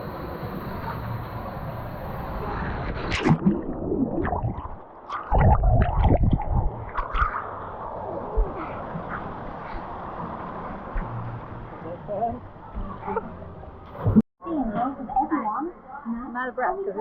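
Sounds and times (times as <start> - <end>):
water splashing: 0.4 - 9.4
water sloshing and gurgling: 0.8 - 11.8.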